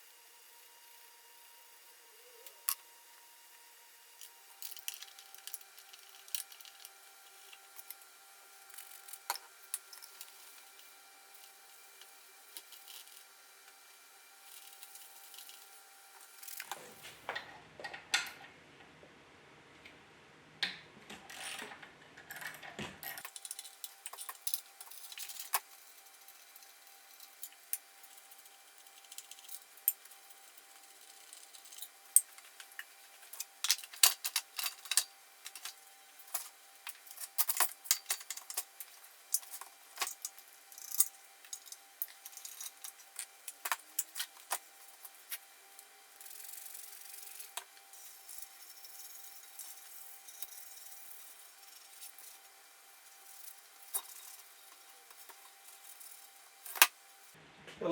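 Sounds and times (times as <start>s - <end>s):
tools and metal parts clinking: 4.2s - 8.0s, 21.3s - 57.0s.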